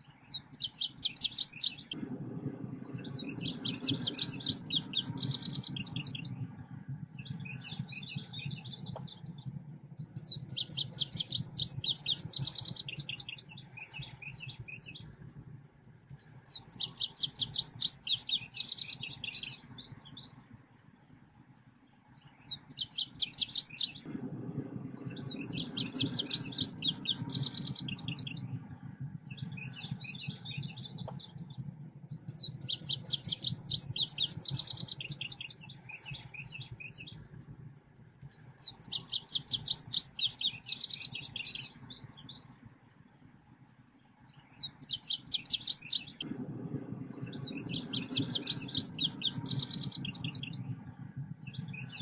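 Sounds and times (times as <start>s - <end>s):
bird high chirping: 0.0s - 2.0s, 2.8s - 6.4s, 7.2s - 15.1s, 16.2s - 20.4s, 22.1s - 24.1s, 25.0s - 28.5s, 29.2s - 37.2s, 38.3s - 42.6s, 44.2s - 46.3s, 47.1s - 50.8s
low steady hum: 0.0s - 52.0s.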